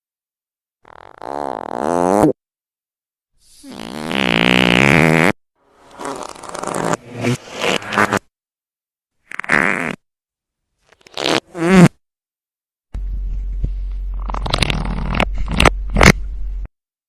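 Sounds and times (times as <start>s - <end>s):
fart sound effects: 0.8s - 2.4s, 3.6s - 8.3s, 9.3s - 10.0s, 11.0s - 12.0s, 14.2s - 16.2s.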